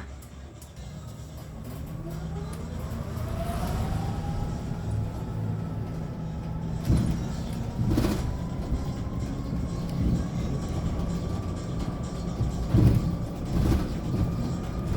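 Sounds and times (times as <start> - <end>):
low road rumble: 0.0 - 14.9
electric bus motor whine: 0.1 - 14.9
knocks and rattles: 6.4 - 14.9.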